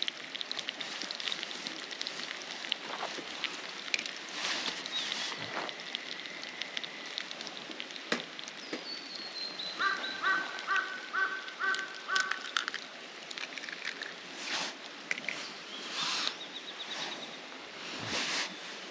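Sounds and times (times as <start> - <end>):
sharp clicks and knocks: 8.1 - 8.8
crow cawing: 9.8 - 12.6.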